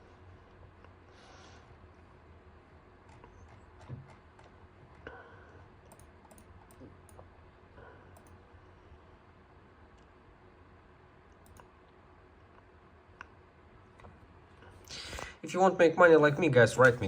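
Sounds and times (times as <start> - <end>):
low steady hum: 0.0 - 17.0
faint clicks: 11.3 - 14.2.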